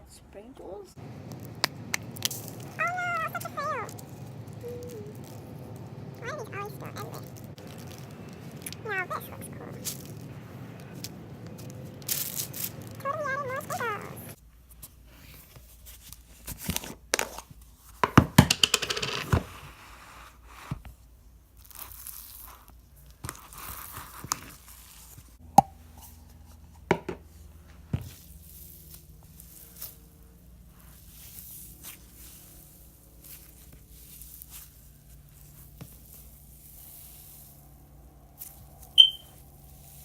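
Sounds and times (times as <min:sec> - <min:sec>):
slime crackling and popping: 0:01.2 - 0:13.0, 0:21.6 - 0:25.2.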